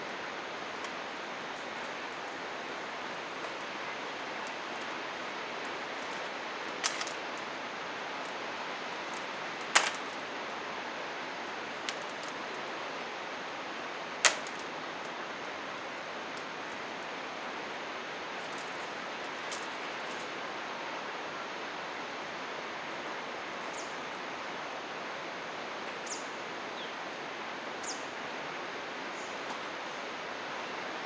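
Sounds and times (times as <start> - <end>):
sharp click: 14.3 - 14.6.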